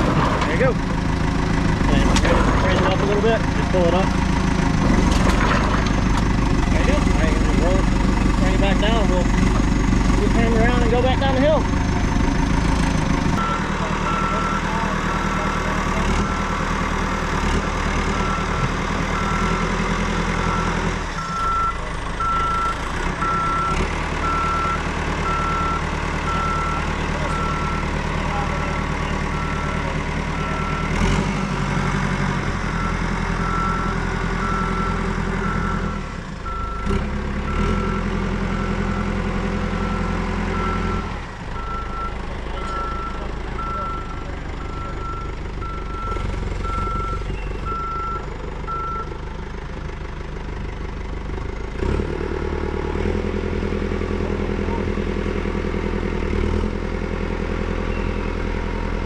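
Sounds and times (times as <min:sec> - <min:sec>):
diesel engine running: 0:00.0 - 0:59.0
reversing alarm beeping: 0:13.4 - 0:16.6, 0:18.2 - 0:19.8, 0:20.4 - 0:31.8, 0:32.7 - 0:36.9, 0:39.8 - 0:49.2.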